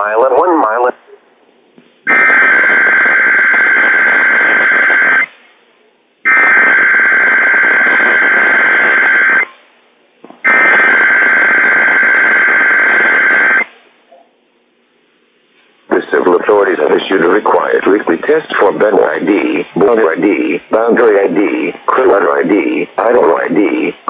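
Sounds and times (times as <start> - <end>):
radio hiss: 0.0 - 1.1, 10.4 - 13.9, 15.8 - 24.0.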